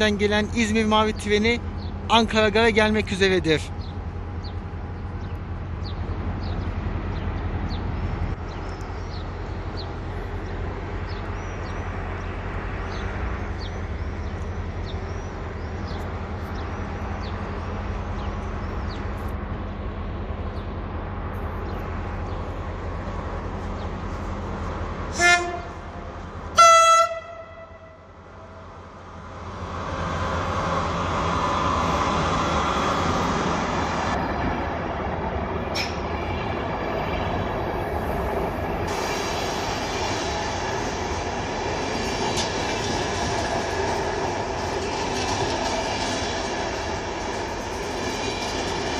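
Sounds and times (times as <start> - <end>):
train rumble: 0.0 - 48.9
train horn blasts: 25.1 - 28.2.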